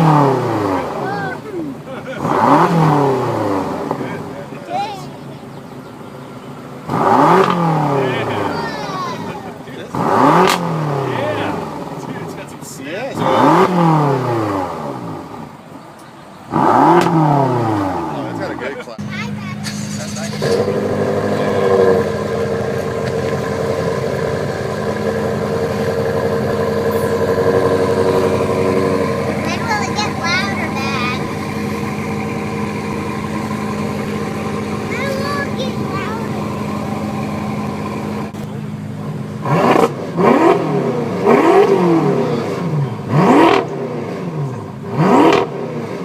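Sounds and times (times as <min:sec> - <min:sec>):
car exhaust drone: 0:00.0 - 0:46.0.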